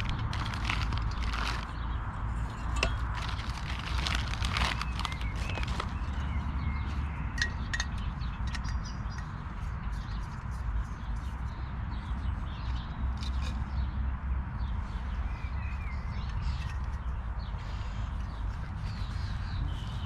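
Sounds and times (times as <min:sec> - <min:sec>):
light clicks and clinks: 0:07.4 - 0:09.4
bird chirps: 0:14.6 - 0:20.0.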